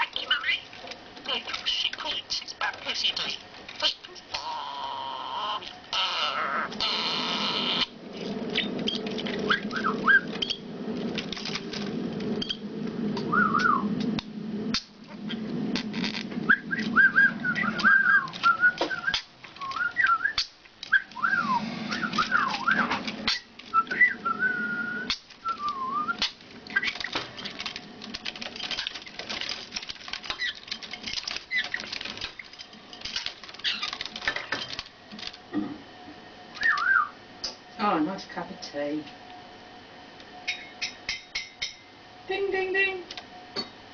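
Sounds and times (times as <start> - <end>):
low hum: 3.1 - 37.8
bird whistling and chattering: 9.5 - 10.6, 16.4 - 27.0, 36.6 - 37.2.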